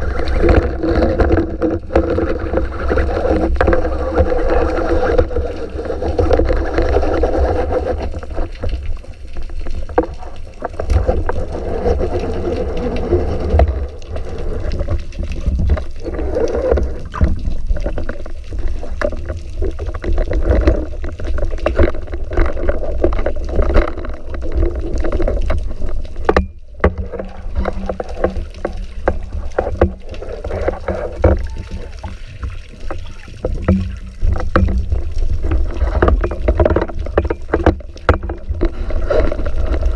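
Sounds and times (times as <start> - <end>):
underwater rumble and sloshing: 0.0 - 39.9
small clicks and knocks: 8.1 - 39.9.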